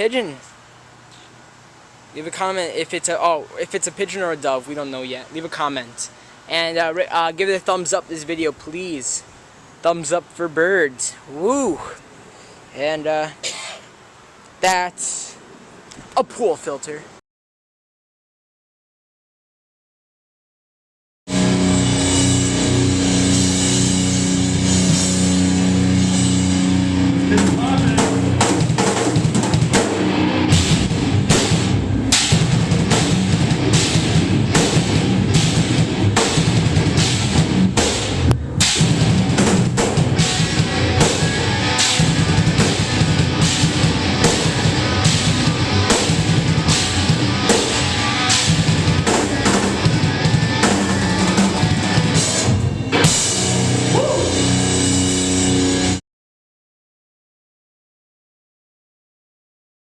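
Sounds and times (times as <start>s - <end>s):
loud rock music with drums: 21.3s - 56.0s.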